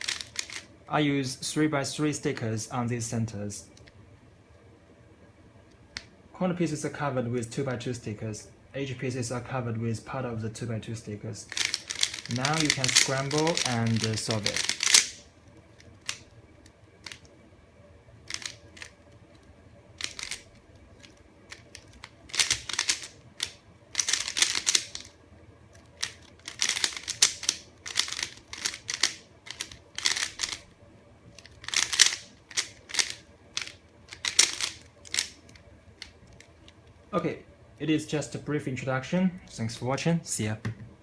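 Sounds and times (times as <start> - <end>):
plastic puzzle cube layers clacking: 0.0 - 0.7, 11.5 - 17.4, 18.3 - 25.1, 25.8 - 30.6, 31.3 - 36.8.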